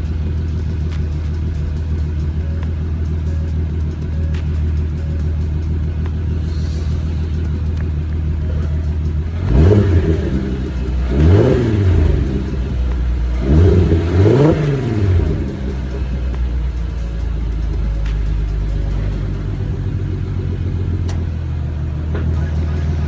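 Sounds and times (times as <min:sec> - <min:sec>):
car engine idling and revving: 0:00.0 - 0:23.0.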